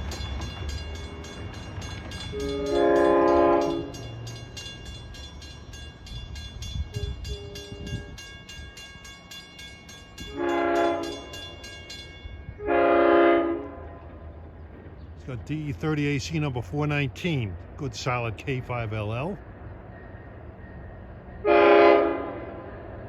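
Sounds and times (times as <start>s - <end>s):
train horn blasts: 2.3s - 4.2s, 6.9s - 8.2s, 10.3s - 11.4s, 12.5s - 14.2s, 21.4s - 22.8s.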